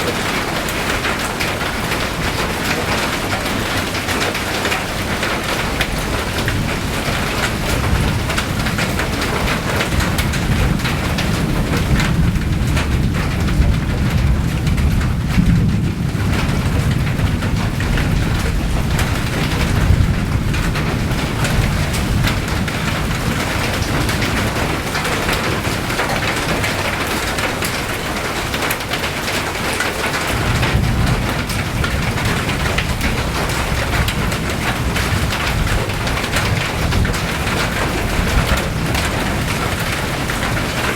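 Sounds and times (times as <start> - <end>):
steady rain falling: 0.0 - 40.9
low rumble: 30.3 - 35.4.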